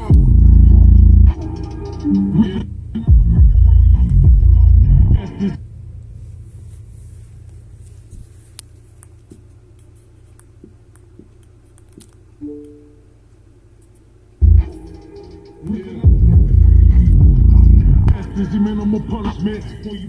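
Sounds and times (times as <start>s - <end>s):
rap music with heavy bass: 0.0s - 8.1s, 14.4s - 20.0s
low steady rumble: 0.0s - 15.0s, 15.6s - 20.0s.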